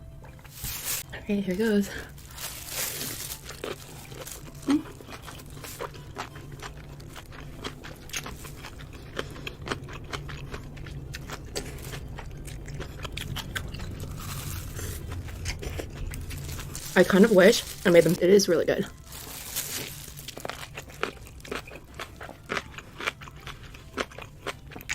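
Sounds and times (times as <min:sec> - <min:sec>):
person chewing noodles: 0:01.9 - 0:17.8, 0:18.8 - 0:24.9
person humming: 0:04.5 - 0:05.0.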